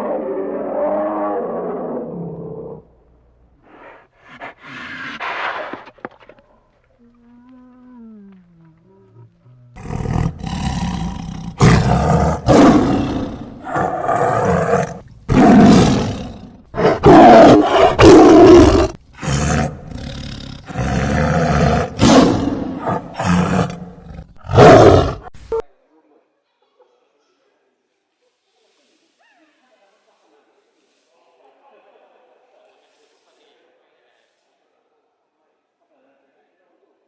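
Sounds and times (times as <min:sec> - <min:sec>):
big cat roaring: 0:00.0 - 0:02.9, 0:09.0 - 0:25.3.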